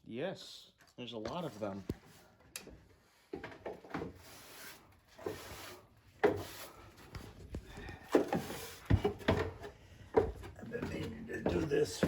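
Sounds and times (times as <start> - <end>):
rubbing and scraping: 4.1 - 7.5.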